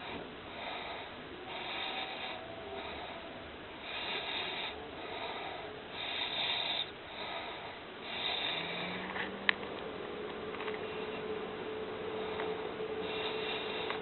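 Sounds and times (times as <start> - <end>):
donkey snoring: 0.0 - 9.4
steady hum: 0.0 - 14.0.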